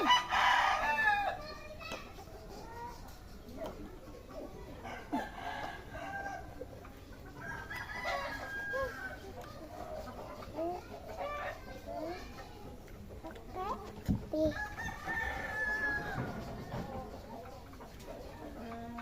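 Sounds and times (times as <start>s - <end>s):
chickens clucking: 0.0s - 19.0s.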